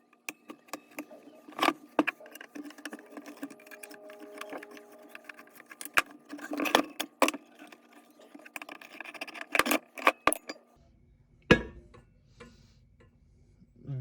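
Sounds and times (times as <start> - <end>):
metal parts clinking: 0.3 - 10.6.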